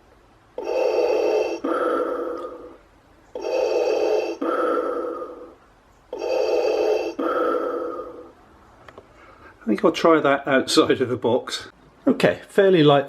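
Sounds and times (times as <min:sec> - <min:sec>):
mechanical respirator breathing: 0:00.6 - 0:08.4.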